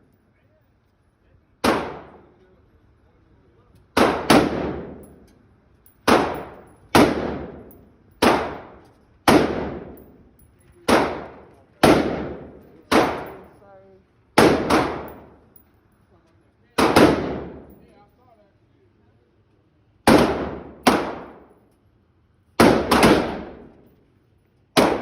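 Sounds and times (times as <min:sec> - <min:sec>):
gunshots with echo: 0:04.0 - 0:05.0, 0:06.1 - 0:10.0, 0:10.9 - 0:13.5, 0:14.4 - 0:15.3, 0:16.8 - 0:17.7, 0:20.1 - 0:21.5, 0:22.6 - 0:23.7, 0:24.8 - 0:25.0.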